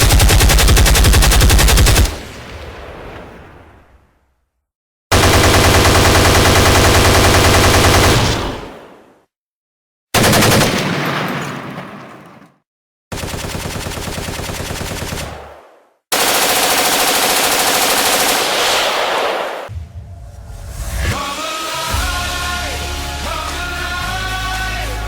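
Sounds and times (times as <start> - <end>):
machine-gun automatic fire: 0.0 - 2.3, 5.1 - 8.8, 10.2 - 12.5, 13.1 - 15.5, 16.1 - 18.8.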